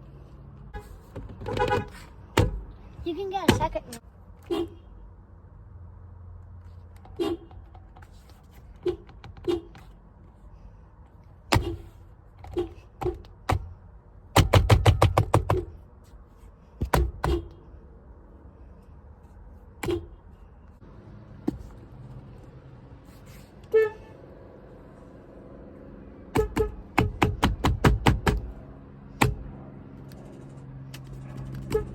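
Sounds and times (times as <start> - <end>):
sharp knocks and clicks: 12.4 - 15.8, 26.4 - 28.5.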